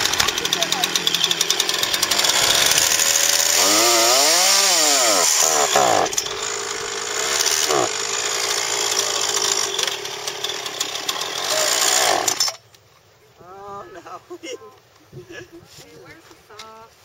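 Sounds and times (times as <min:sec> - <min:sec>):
chainsaw engine running: 0:00.0 - 0:12.6.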